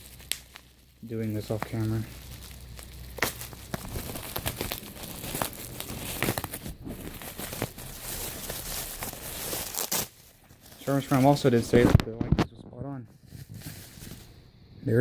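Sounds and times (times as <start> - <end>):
packaging crinkling and tearing: 0.0 - 12.1, 13.1 - 14.4.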